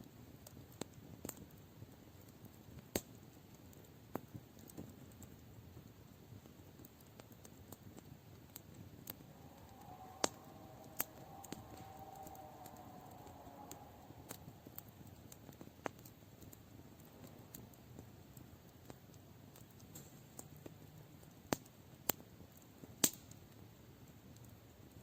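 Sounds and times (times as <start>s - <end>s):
wood fire crackling and popping: 0.0s - 25.0s
faint droning tone: 8.9s - 15.9s.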